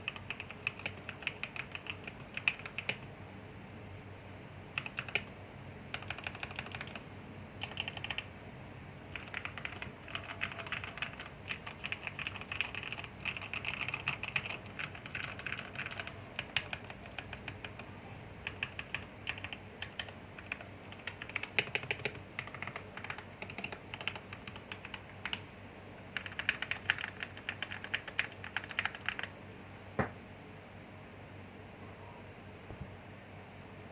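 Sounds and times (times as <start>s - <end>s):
typing on mechanical keyboard: 0.0s - 3.1s, 4.8s - 7.0s, 7.6s - 8.3s, 9.1s - 25.4s, 26.1s - 29.3s.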